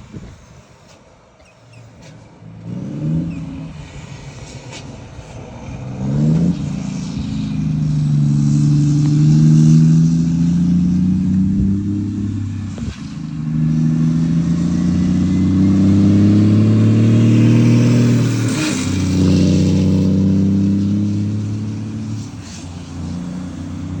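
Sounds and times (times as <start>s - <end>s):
truck diesel engine rumbling: 0.0s - 24.0s
short air hiss: 22.1s - 23.4s.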